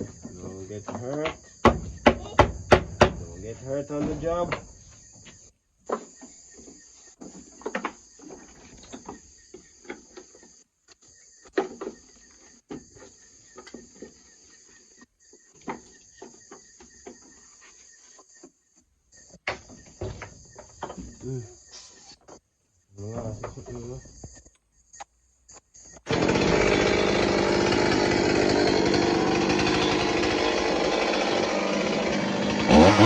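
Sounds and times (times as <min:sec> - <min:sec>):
crickets chirring: 0:00.0 - 0:26.1
hammer knocks and taps: 0:00.9 - 0:03.3.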